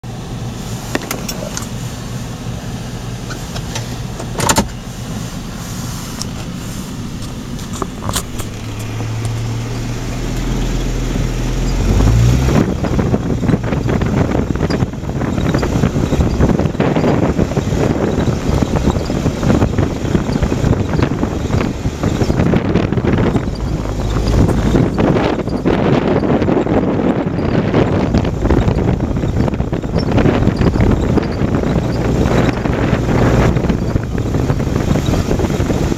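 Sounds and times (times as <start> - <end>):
car engine hum: 0.0 - 35.9
road noise with clicks: 0.0 - 35.9.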